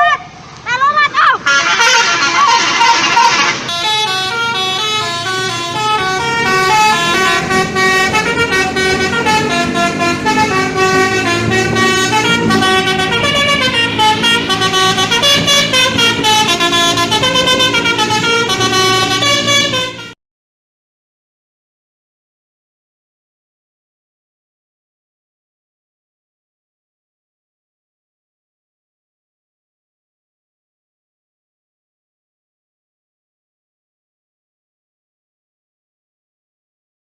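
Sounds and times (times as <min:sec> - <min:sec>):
multi-tone bus horn playing tune: 0:01.3 - 0:20.2.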